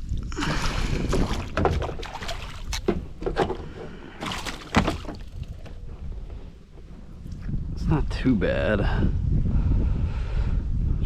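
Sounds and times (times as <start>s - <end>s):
sharp knocks and rattles: 1.0s - 6.9s.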